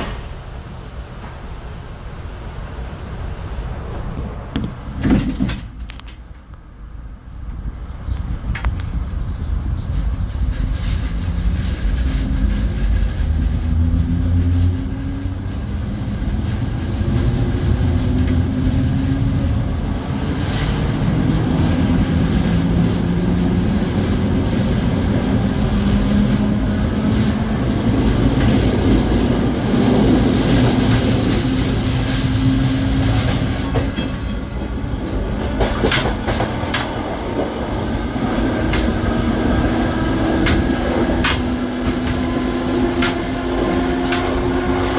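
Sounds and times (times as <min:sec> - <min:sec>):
wheels clicking on rails: 0:07.4 - 0:44.9.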